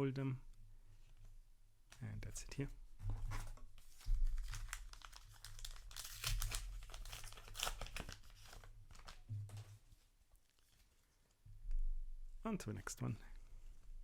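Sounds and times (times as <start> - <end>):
paper wrapper crinkling and tearing: 3.5 - 9.2.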